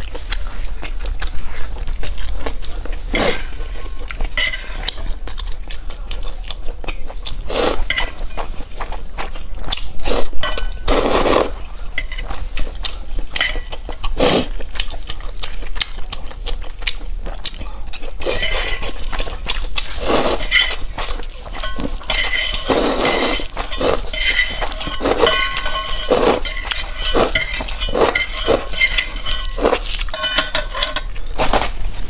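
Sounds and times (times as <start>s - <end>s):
close mouth eating noises: 0.0s - 30.1s
utensils clinking against a dish: 2.1s - 5.6s, 7.2s - 14.9s, 18.2s - 31.7s.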